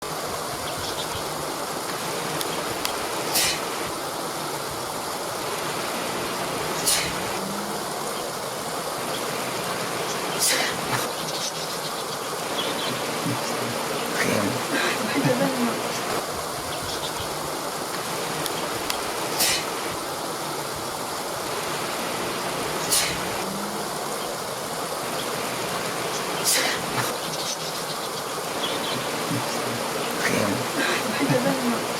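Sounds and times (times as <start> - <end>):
waterfall rushing: 0.0 - 31.9
short hissing burst: 3.1 - 4.0, 5.8 - 7.8, 19.2 - 20.0, 21.8 - 23.7.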